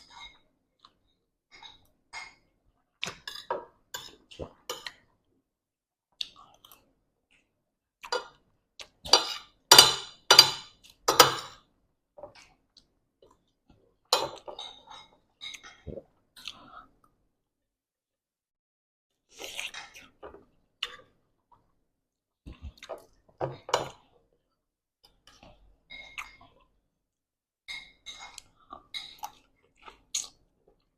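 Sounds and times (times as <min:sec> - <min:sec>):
cutlery and dishes clinking: 0:09.1 - 0:11.6, 0:14.1 - 0:15.9.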